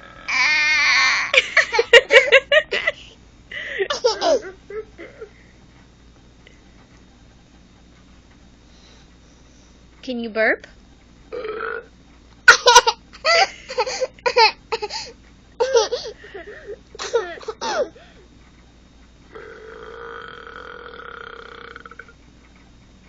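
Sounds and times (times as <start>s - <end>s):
adult laughing: 1.3s - 5.4s, 12.5s - 15.0s, 15.6s - 18.0s
baby laughing: 3.9s - 5.3s, 15.6s - 16.1s
burp: 11.3s - 11.9s, 19.3s - 22.2s.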